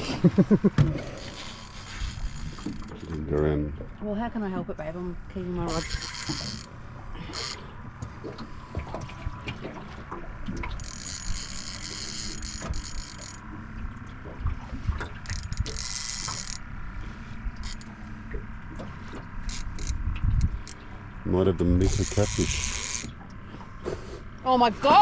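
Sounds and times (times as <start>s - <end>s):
low rumble of boat and water: 0.0s - 25.0s
fishing reel clicking and whirring: 1.0s - 3.5s, 5.5s - 7.9s, 10.6s - 13.7s, 15.0s - 18.2s, 19.2s - 23.2s.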